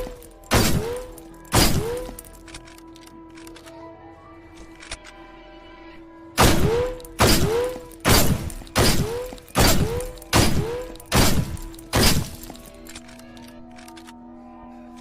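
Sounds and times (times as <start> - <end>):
shotgun shots with echo: 0.0 - 2.2, 6.4 - 12.6.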